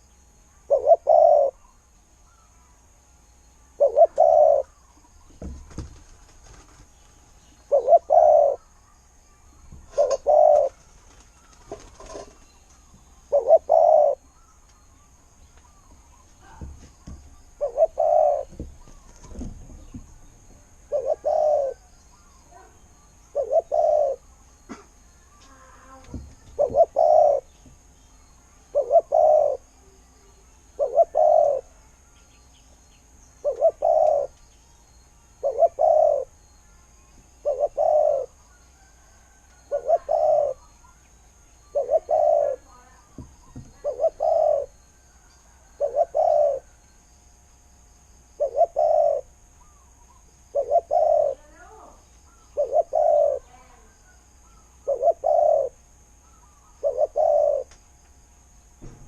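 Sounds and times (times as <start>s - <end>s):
dove cooing: 0.6s - 1.7s, 3.8s - 4.8s, 7.6s - 8.7s, 9.8s - 12.4s, 13.2s - 14.5s, 15.7s - 27.5s, 28.6s - 30.0s, 30.7s - 31.8s, 33.4s - 34.4s, 35.4s - 36.4s, 37.4s - 40.8s, 41.6s - 46.8s, 48.4s - 55.8s, 56.5s - 57.7s.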